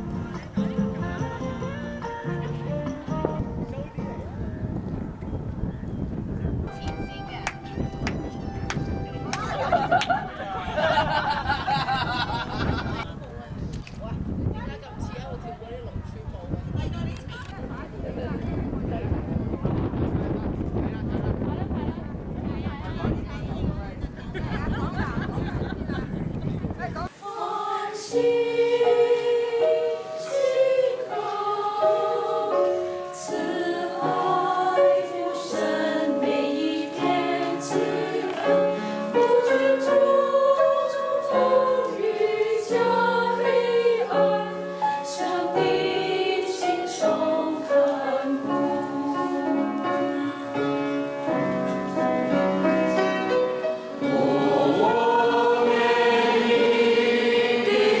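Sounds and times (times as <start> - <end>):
choir singing gospel song: 27.1 - 52.0, 52.6 - 58.0.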